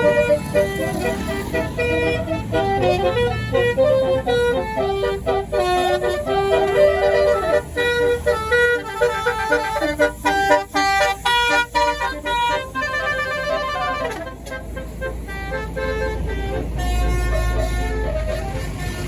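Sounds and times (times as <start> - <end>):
bus engine rumbling: 0.0 - 19.0
bus horn playing melody: 0.0 - 19.0.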